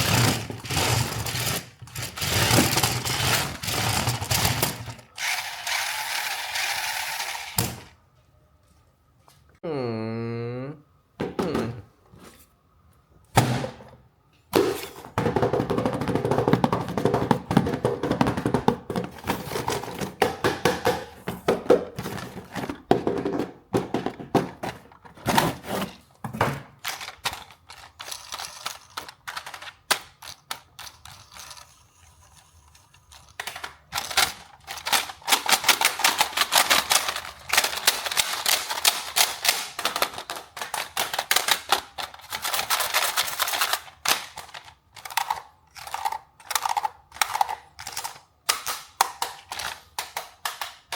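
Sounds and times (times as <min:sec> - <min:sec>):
toy packaging crackling: 0:00.0 - 0:07.9, 0:26.8 - 0:50.9.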